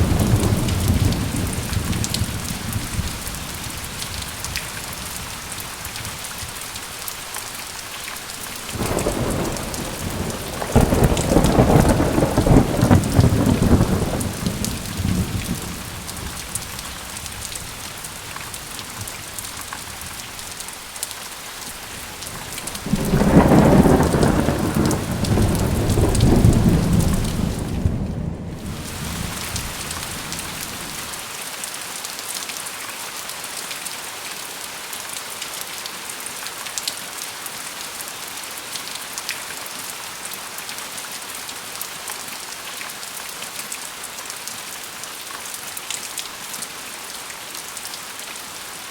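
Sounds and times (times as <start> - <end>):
thunder rumbling: 0.0 - 6.7, 8.3 - 20.5, 21.8 - 31.2
steady rain: 0.0 - 48.9.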